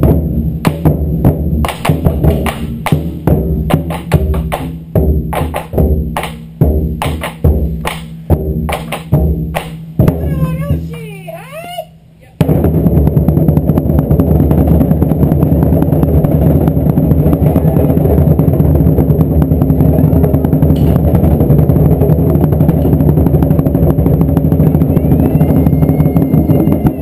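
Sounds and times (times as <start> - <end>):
taiko drums beaten rapidly: 0.0 - 11.2, 12.4 - 27.0.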